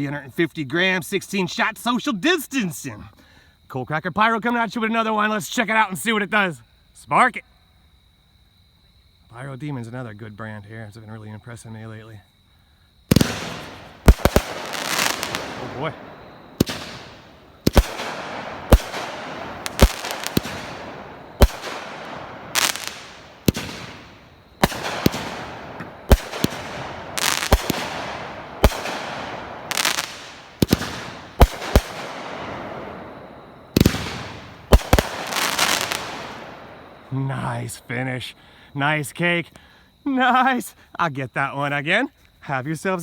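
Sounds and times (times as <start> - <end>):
firework bangs with hiss: 13.0 - 37.7.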